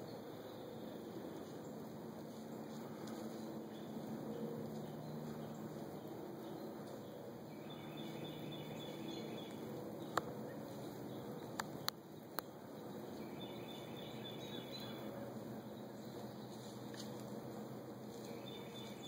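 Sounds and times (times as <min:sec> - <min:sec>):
outdoor background hiss: 0:00.0 - 0:19.0.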